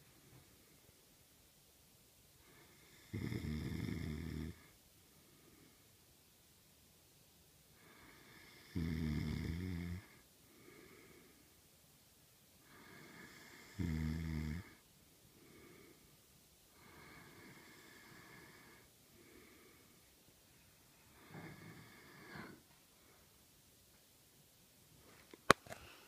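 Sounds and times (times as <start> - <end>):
man snoring: 2.6 - 4.7, 7.9 - 10.2, 12.7 - 14.8, 16.8 - 18.9, 21.2 - 22.6
soft breathing: 4.7 - 6.0, 10.0 - 11.7, 14.6 - 23.5, 25.0 - 26.0.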